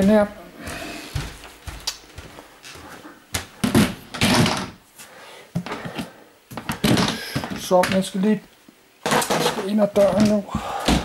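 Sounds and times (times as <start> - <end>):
objects knocking and clunking: 3.4 - 4.8, 5.5 - 8.3, 9.0 - 11.0.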